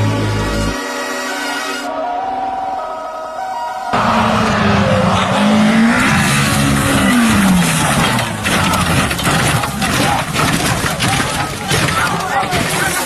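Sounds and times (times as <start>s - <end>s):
tyre and road noise: 3.6s - 13.0s
rally car engine: 3.9s - 13.0s
sharp clicks and knocks: 7.3s - 13.0s.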